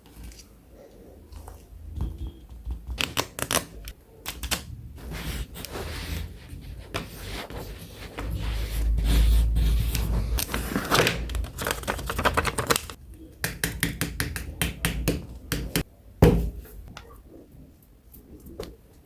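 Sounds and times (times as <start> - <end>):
handling and rubbing noise: 4.8 - 13.0.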